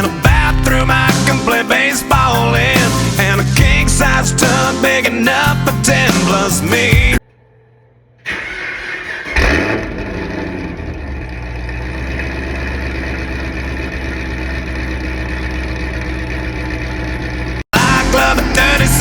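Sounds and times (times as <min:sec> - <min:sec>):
car engine starting and idling: 0:08.2 - 0:19.0.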